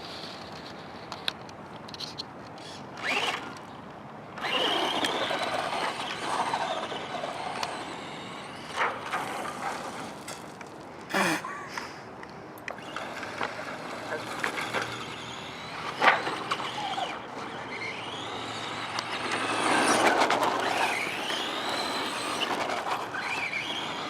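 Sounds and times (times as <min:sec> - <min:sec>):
rc truck motor whining: 0:02.0 - 0:03.7, 0:04.4 - 0:10.5, 0:12.7 - 0:24.0.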